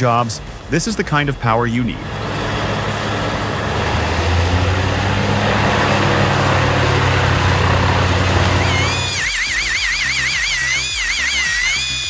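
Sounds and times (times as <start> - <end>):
diesel engine drone: 0.0 - 12.0
warbling high tone: 8.4 - 12.0.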